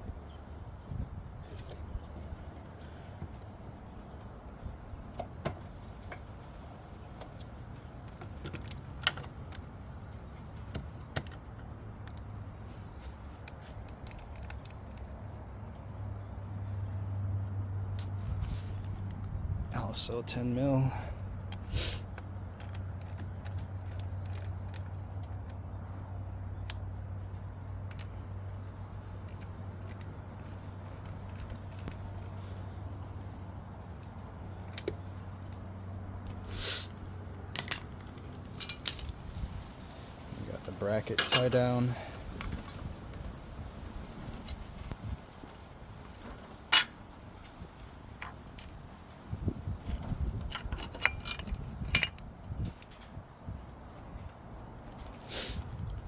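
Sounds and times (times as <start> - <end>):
steady low hum: 0.0 - 56.0
metal hand tools clinking: 41.0 - 41.7.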